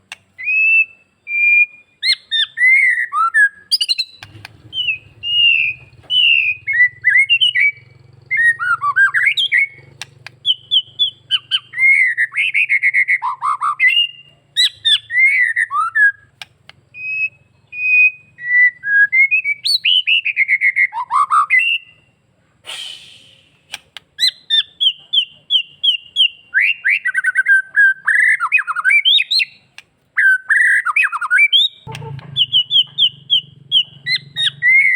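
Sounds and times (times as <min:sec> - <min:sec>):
songbird singing whistled phrases: 0:00.1 - 0:34.9
bird harsh rasp: 0:22.6 - 0:24.8, 0:31.8 - 0:34.9.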